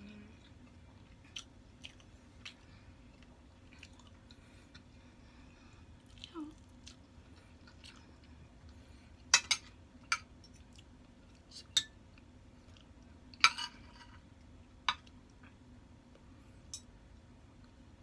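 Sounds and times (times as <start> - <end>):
cutlery clinking against plate: 9.3 - 10.6, 13.4 - 14.2.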